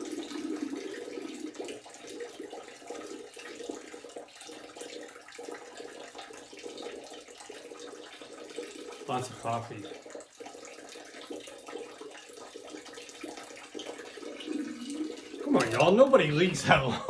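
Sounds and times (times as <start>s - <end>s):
man urinating into toilet: 0.0s - 17.0s.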